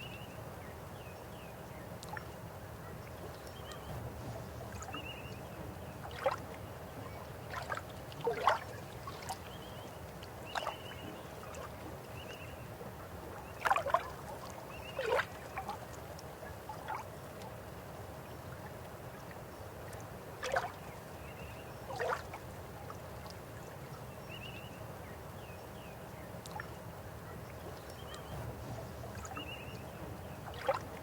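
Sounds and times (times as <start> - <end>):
water gurgles and splashes: 5.8 - 12.4, 13.3 - 17.5, 19.8 - 20.9, 21.9 - 23.3, 28.0 - 31.0.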